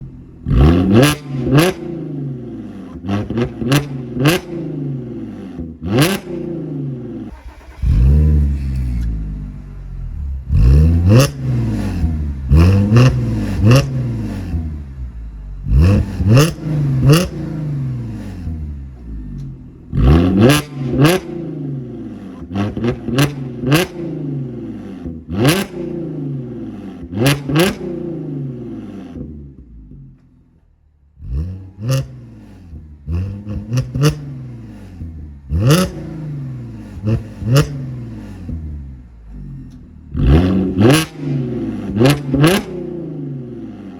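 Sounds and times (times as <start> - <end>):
car engine revving: 0.0 - 43.9.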